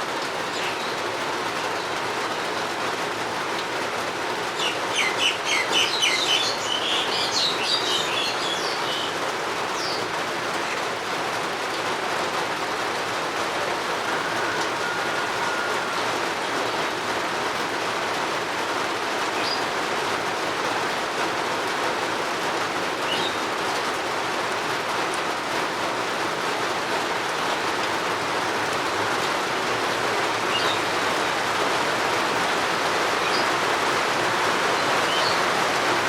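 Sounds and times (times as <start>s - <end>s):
steady rain falling: 0.0s - 36.0s
bird chirping and trilling: 4.6s - 9.1s, 30.5s - 30.8s, 33.2s - 33.5s, 34.8s - 35.4s.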